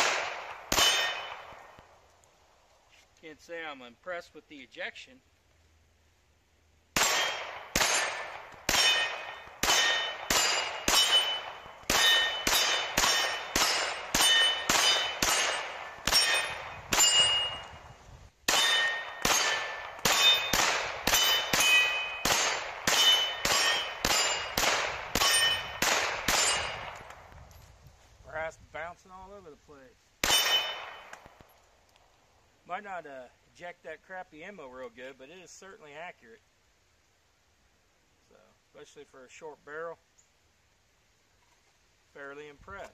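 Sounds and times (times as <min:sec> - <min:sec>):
pistol shots: 0:00.0 - 0:01.8, 0:07.0 - 0:17.7, 0:18.4 - 0:27.2, 0:30.2 - 0:31.5
steel target clanging: 0:00.7 - 0:01.5, 0:07.0 - 0:17.8, 0:18.5 - 0:27.0, 0:30.2 - 0:31.2.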